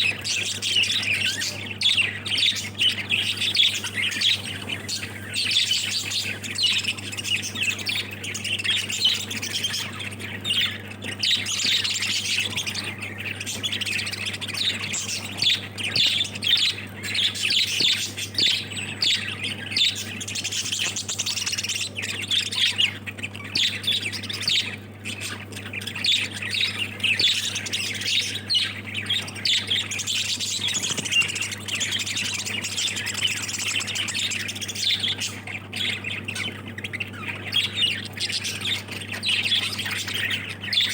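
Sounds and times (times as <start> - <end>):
steady low hum: 0.0 - 9.3
lovebirds chirping and squawking: 0.0 - 40.9.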